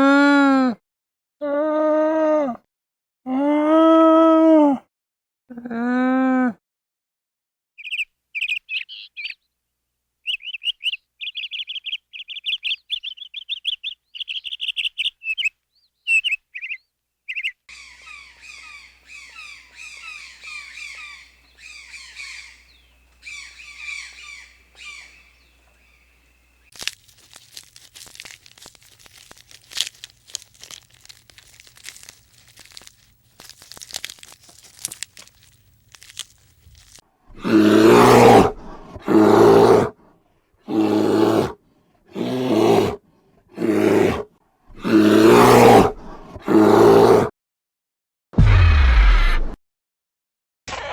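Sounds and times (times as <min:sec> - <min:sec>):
animal squawking calls: 0:17.7 - 0:26.0
faint dry crackling: 0:26.7 - 0:37.0
loud animal calls: 0:37.3 - 0:39.9, 0:43.6 - 0:47.3.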